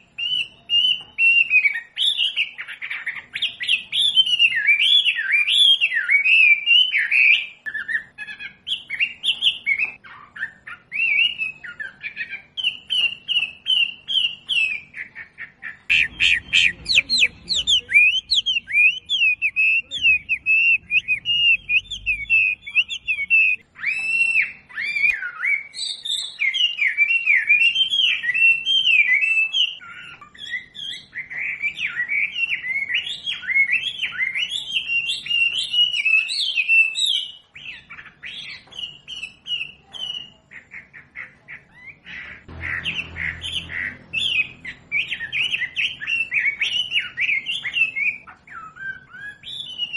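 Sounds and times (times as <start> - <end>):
bird singing: 0.0 - 49.9
faint low rumble: 15.9 - 23.6.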